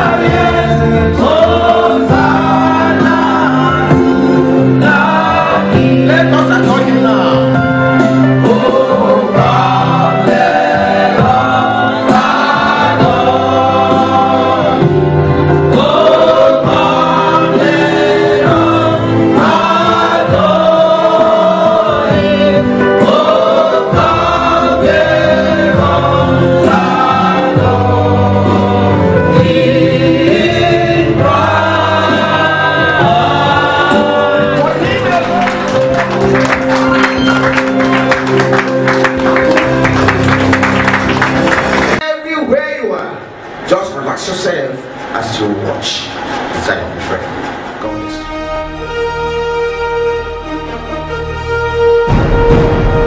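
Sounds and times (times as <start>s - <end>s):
gospel choir singing: 0.0s - 42.0s
backing music: 0.0s - 53.0s.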